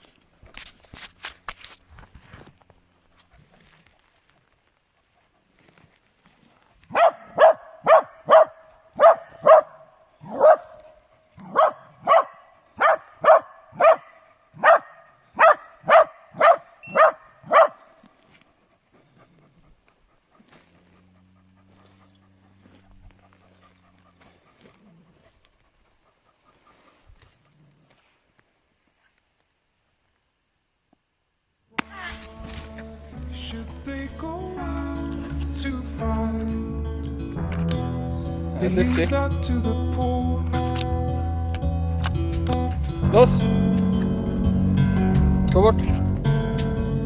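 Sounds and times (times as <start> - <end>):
dog barking: 6.9 - 18.0.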